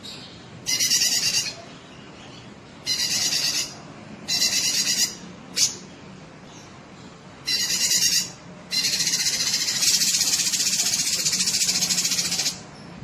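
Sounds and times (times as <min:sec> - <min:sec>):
bird singing in hissy trills: 0:00.0 - 0:05.9, 0:07.4 - 0:13.0.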